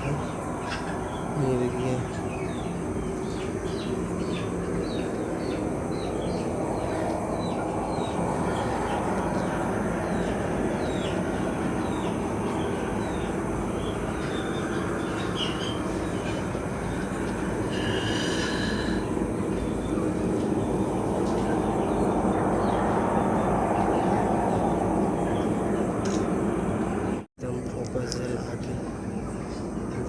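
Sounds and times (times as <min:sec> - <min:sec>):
steady rushing rumble: 0:00.0 - 0:27.3.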